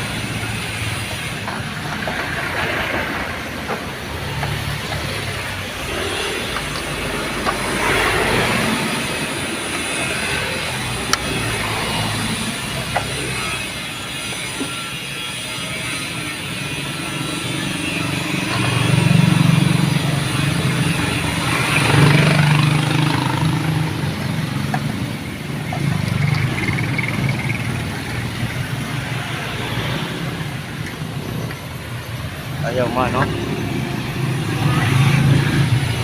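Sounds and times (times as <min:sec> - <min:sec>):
vehicle engine running: 0:16.6 - 0:36.0.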